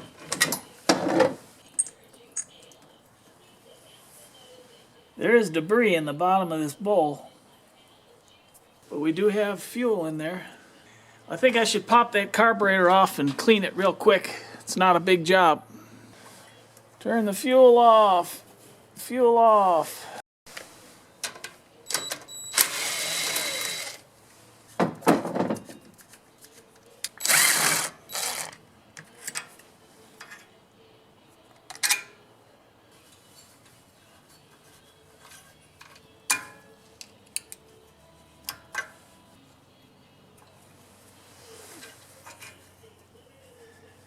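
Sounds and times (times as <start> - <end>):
metal clicks and clinks: 1.8 - 2.7
power tool bursts: 22.5 - 24.0, 27.2 - 28.6.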